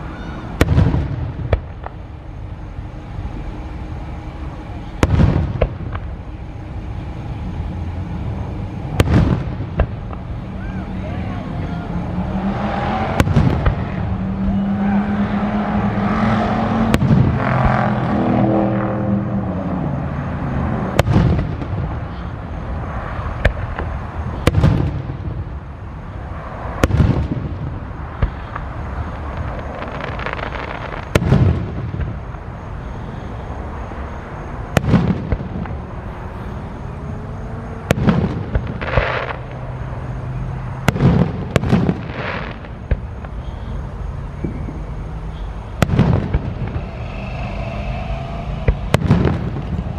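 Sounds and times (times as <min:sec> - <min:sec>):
fireworks booming: 0:00.0 - 0:49.9.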